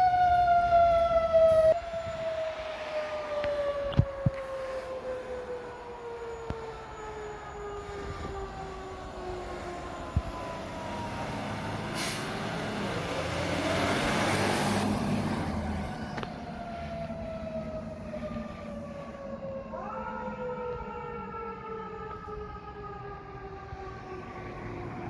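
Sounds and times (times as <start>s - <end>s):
fire engine siren: 0.0s - 25.0s
heavy vehicle passing: 8.6s - 17.1s.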